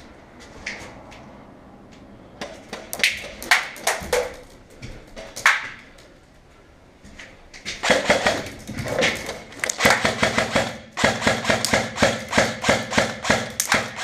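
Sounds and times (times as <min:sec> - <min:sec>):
sharp snaps and clicks: 0:02.4 - 0:04.3, 0:09.1 - 0:10.0.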